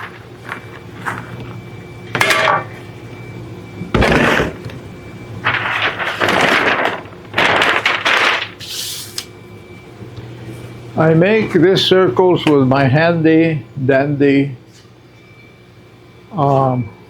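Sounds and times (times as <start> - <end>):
rustles and clatters: 5.5 - 8.6.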